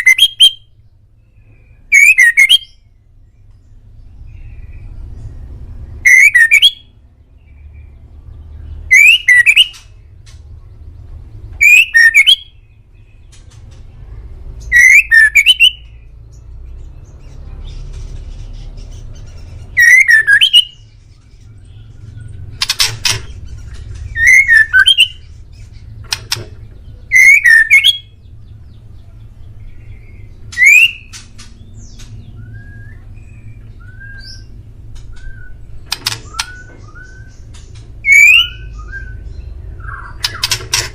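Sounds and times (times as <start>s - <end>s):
bird singing whistles and trills: 0.0s - 0.7s, 1.4s - 2.9s, 6.0s - 6.9s, 8.6s - 9.9s, 11.6s - 13.2s, 14.6s - 16.1s, 19.2s - 22.3s, 24.1s - 25.8s, 26.9s - 28.2s, 29.6s - 40.6s.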